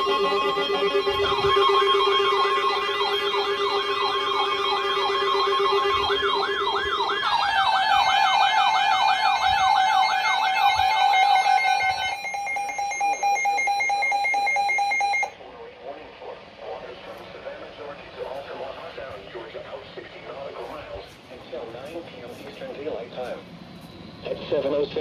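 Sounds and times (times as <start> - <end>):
steady electronic tone: 0.0 - 15.3
warbling alert tone: 0.0 - 15.3.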